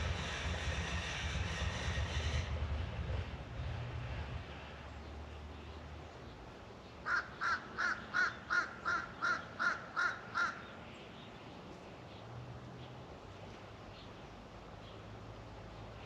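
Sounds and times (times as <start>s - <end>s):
faint low engine hum: 0.0s - 16.0s
crow cawing: 7.0s - 10.6s.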